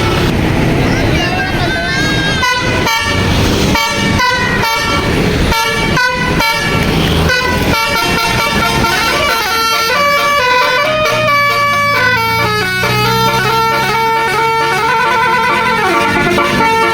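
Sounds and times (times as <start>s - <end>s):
bus engine running: 0.0s - 16.9s
multi-tone musical bus horn: 1.7s - 16.9s.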